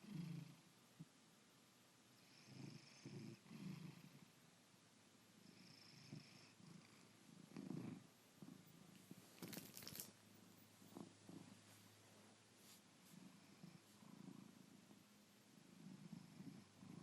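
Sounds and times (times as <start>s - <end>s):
cat snoring softly: 0.0s - 0.7s, 2.2s - 4.4s, 5.4s - 9.0s, 10.8s - 11.8s, 13.0s - 17.0s.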